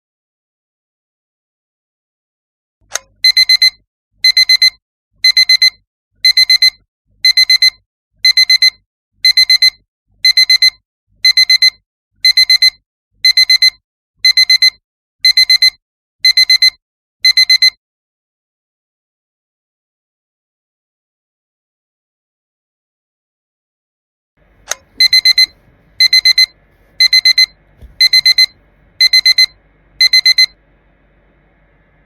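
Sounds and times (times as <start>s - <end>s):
click: 2.9s - 3.1s, 24.6s - 25.5s
digital alarm clock beeping: 3.2s - 17.8s, 24.7s - 30.6s.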